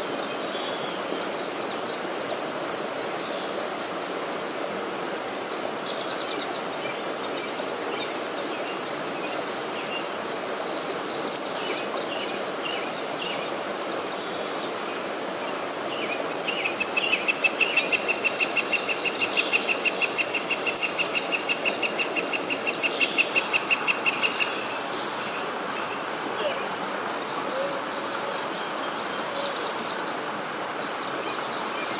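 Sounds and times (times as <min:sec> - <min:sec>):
stream water running: 0:00.0 - 0:31.9.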